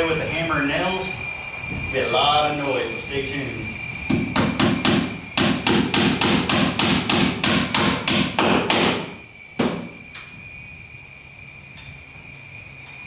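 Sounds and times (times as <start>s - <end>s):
hammer driving nails through metal: 4.1s - 9.9s.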